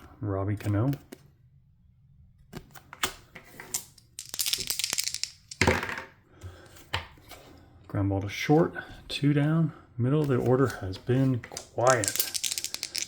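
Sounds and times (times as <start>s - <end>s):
dice rattling and clattering: 3.8s - 6.0s, 11.5s - 13.0s.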